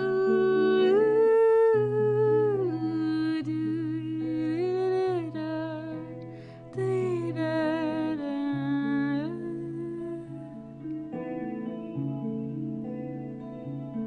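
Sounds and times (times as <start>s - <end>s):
person humming a slow melody: 0.0s - 11.0s
guitar accompaniment: 0.0s - 14.0s
singer breathing in: 6.2s - 6.7s.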